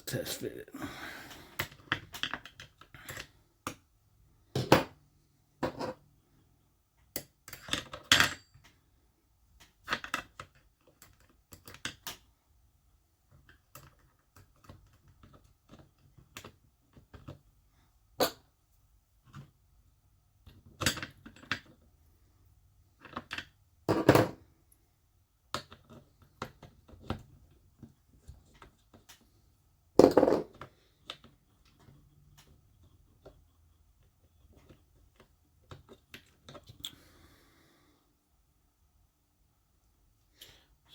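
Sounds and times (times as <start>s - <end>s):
small parts clicking and clattering: 1.5s - 3.9s, 7.0s - 8.9s, 9.5s - 12.3s, 13.2s - 17.5s, 20.4s - 21.9s, 22.5s - 23.6s, 25.5s - 29.4s, 30.0s - 37.0s.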